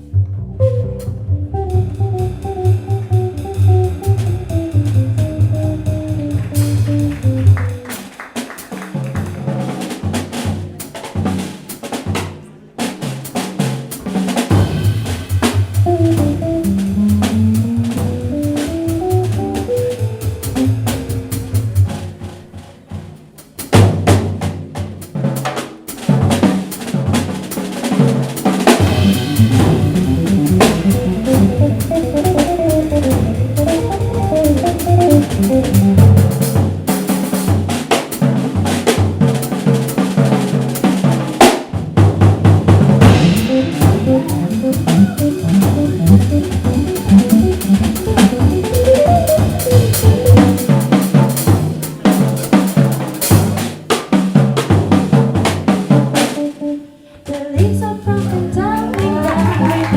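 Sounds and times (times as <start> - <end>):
instrumental jazz: 0.0 - 59.9
snare drum and rimshots: 6.3 - 21.8, 25.4 - 41.8, 42.7 - 56.5.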